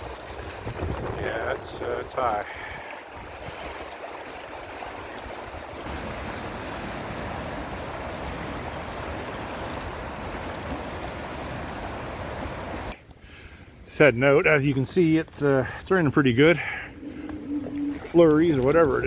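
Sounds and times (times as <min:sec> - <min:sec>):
wind rumble on microphone: 0:00.0 - 0:02.1, 0:16.9 - 0:19.0
rushing river water: 0:00.0 - 0:13.0, 0:16.0 - 0:19.0.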